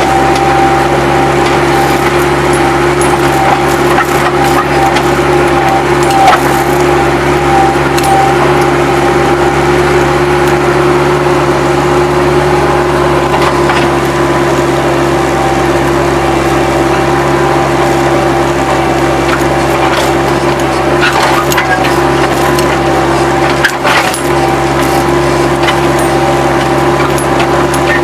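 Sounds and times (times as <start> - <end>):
diesel engine running: 0.0 - 28.0
high steady whine: 0.0 - 28.0.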